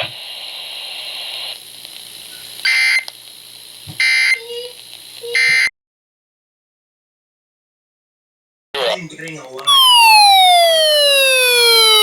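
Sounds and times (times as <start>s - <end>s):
radio hiss: 0.0s - 5.4s, 8.8s - 10.2s.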